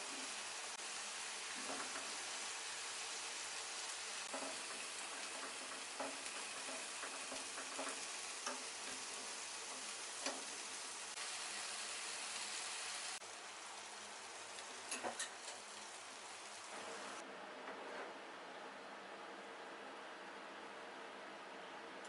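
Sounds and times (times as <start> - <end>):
food sizzling in a pan: 0.0 - 17.2.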